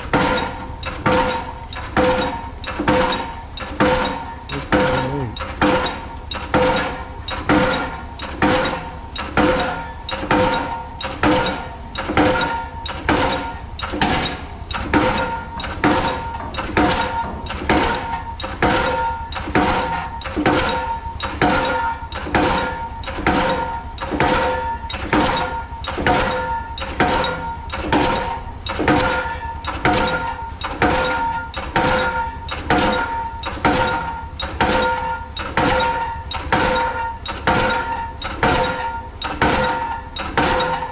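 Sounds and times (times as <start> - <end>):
pile driver hammering: 0.1 - 6.0, 9.4 - 20.8, 22.4 - 40.9
engine low hum: 4.3 - 6.3.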